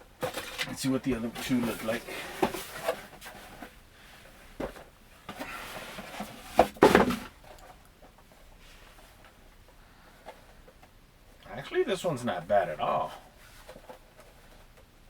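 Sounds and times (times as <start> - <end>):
box scraping: 0.2 - 3.8, 4.6 - 7.4
boxes knocking: 5.4 - 7.4.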